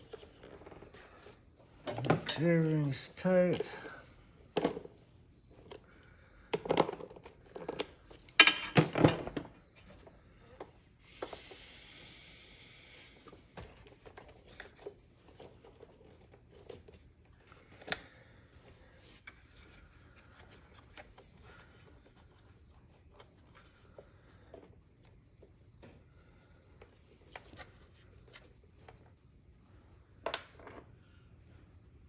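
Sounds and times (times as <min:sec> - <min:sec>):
hand tools clicking and knocking: 0:01.8 - 0:04.9, 0:06.5 - 0:09.6.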